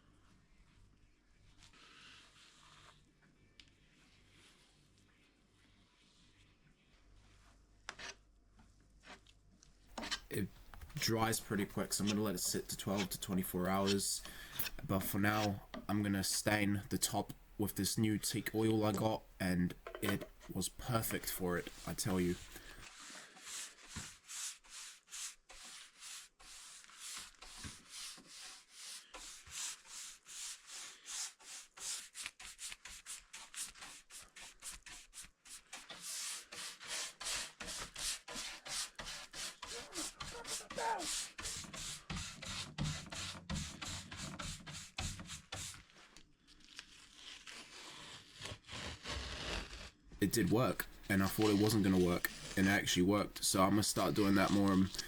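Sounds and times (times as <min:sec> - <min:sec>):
rubbing strokes on wood: 0:10.0 - 0:16.6, 0:18.0 - 0:46.1, 0:50.2 - 0:55.0.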